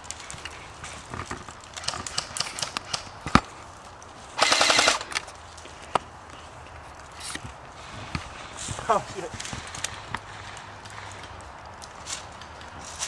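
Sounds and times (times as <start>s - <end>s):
airsoft guns firing: 1.8s - 3.6s, 4.4s - 5.3s.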